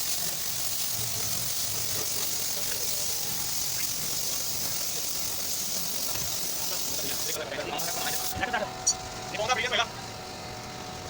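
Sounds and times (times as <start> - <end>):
compressed air hissing: 0.0 - 8.4.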